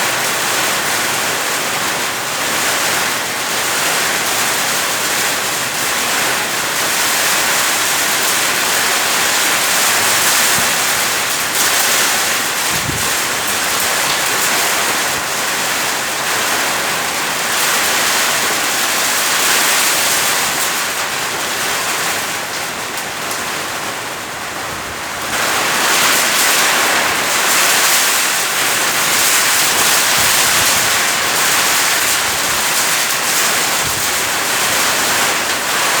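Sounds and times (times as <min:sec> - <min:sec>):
heavy rain pouring: 0:00.0 - 0:36.0
gusty wind: 0:09.0 - 0:14.6, 0:24.4 - 0:36.0.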